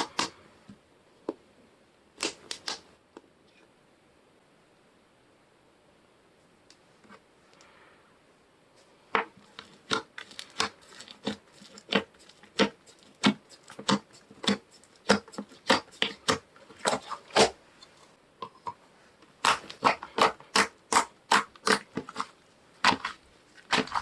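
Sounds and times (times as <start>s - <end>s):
slime clicking and popping: 19.4s - 22.2s.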